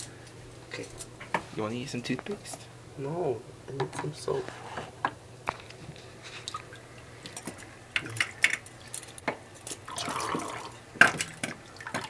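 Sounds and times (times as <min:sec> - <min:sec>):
running water: 0:06.1 - 0:12.0
water splashing and dripping: 0:06.4 - 0:12.0.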